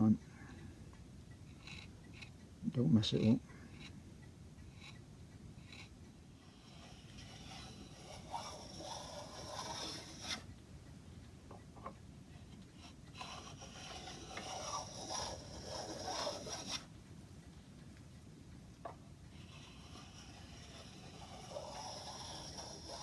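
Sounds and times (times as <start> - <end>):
hand tool scraping wood: 1.5 - 2.4, 3.7 - 4.0, 4.7 - 5.0, 5.6 - 10.5, 12.8 - 16.9, 19.3 - 23.0.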